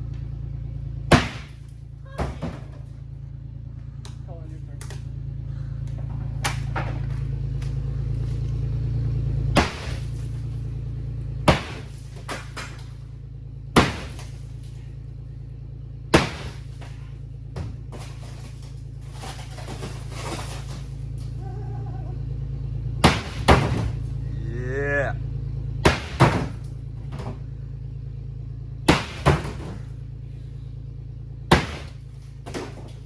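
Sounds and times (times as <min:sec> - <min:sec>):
steady low hum: 0:00.0 - 0:33.0
sledgehammer striking car roof: 0:01.0 - 0:03.0, 0:09.4 - 0:15.1, 0:16.0 - 0:21.4, 0:22.2 - 0:24.3, 0:25.2 - 0:33.0.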